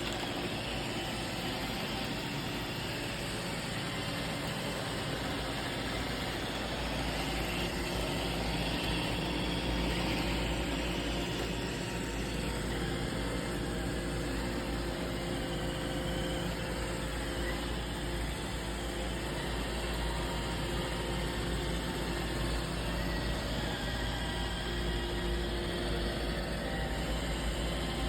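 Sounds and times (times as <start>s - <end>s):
robot vacuum whirring: 0.0s - 28.0s.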